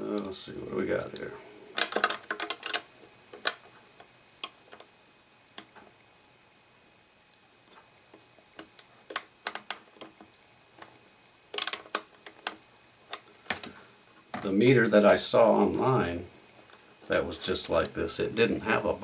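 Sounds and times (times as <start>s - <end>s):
metal parts and tools clicking: 1.8s - 2.8s, 11.5s - 13.7s.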